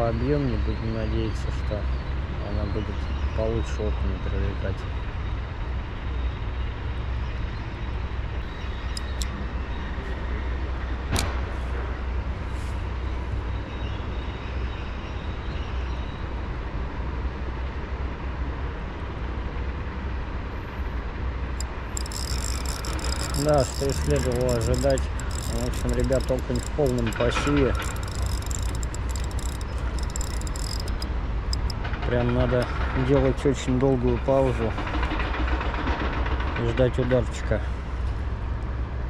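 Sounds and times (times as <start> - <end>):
sharp click: 8.8 - 9.4, 11.1 - 11.4, 21.6 - 32.8.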